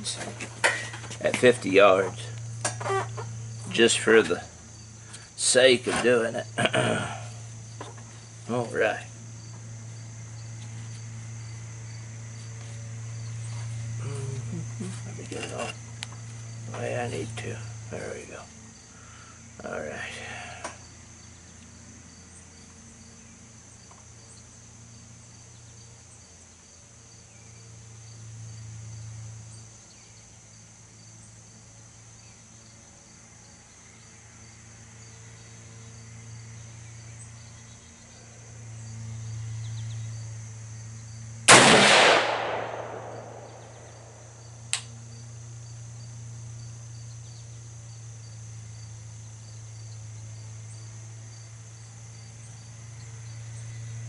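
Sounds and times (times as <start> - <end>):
crickets chirping: 0.0 - 54.0
rifle shot: 41.5 - 43.8.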